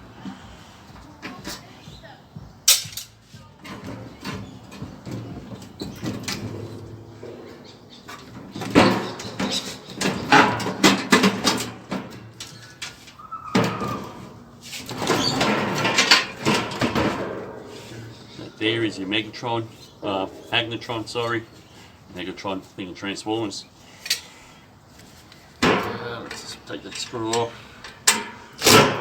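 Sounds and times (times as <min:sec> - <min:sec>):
metal parts clattering and scraping: 0:02.7 - 0:18.6.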